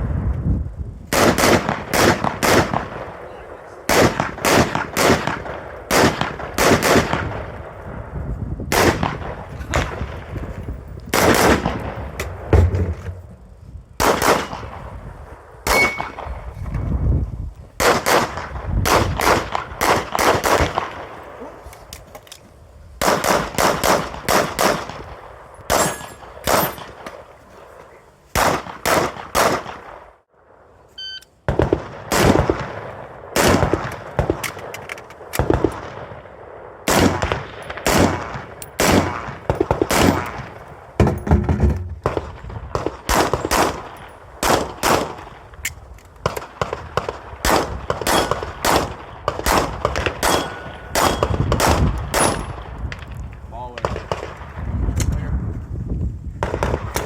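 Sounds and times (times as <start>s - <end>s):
rapid pistol gunfire: 1.1s - 3.2s, 3.8s - 7.6s, 8.7s - 10.2s, 11.1s - 13.0s, 14.0s - 14.9s, 17.8s - 21.2s, 23.0s - 27.2s, 28.4s - 30.0s, 31.5s - 34.7s, 36.9s - 40.6s, 42.0s - 45.4s, 46.2s - 52.7s.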